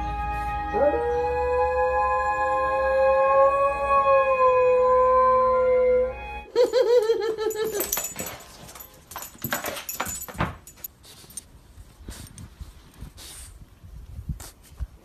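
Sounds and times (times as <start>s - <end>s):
clicks and knocks: 7.7s - 10.9s.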